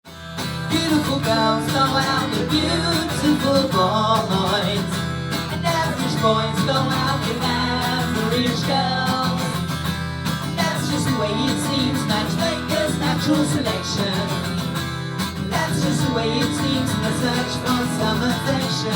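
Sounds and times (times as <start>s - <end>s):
strummed acoustic guitar: 0.0s - 18.9s.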